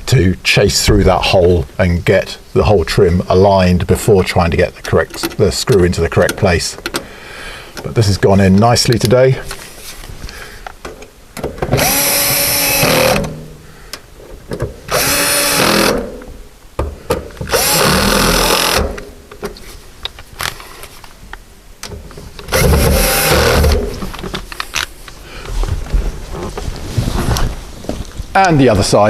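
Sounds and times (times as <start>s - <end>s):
power drill driving screws: 11.7s - 13.4s, 14.9s - 16.2s, 17.4s - 19.1s, 22.5s - 24.0s.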